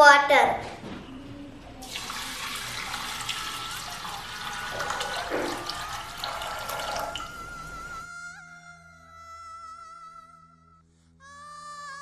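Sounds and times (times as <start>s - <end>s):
soft background music: 0.0s - 12.0s
water pouring and splashing: 1.8s - 8.0s.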